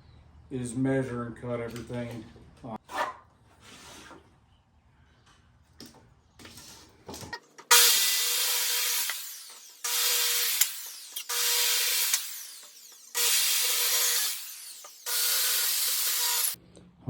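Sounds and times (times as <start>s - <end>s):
power saw cutting wood: 7.6s - 16.6s.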